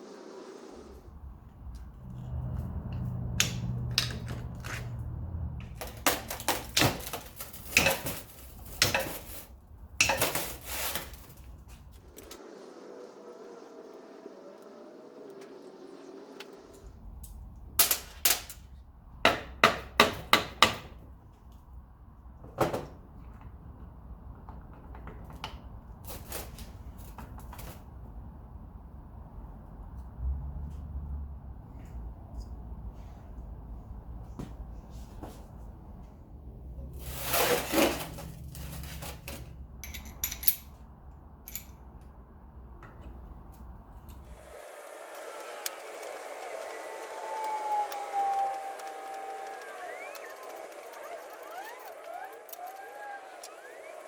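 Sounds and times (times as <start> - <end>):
loud rushing metal scrape: 37.0 - 39.2.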